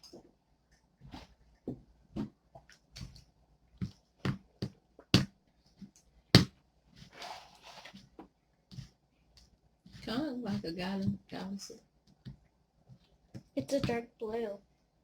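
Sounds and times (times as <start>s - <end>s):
squelchy slime rustle: 6.9s - 8.2s.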